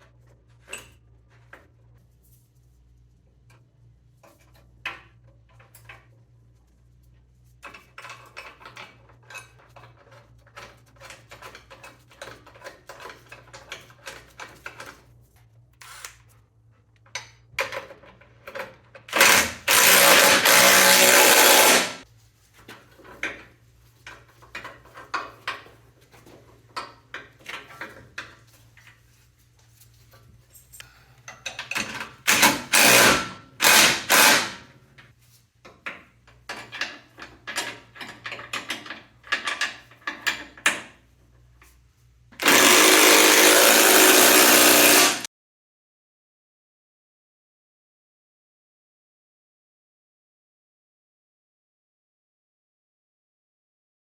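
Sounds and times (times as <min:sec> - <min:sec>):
ratchet wrench clicking: 0:19.1 - 0:22.0.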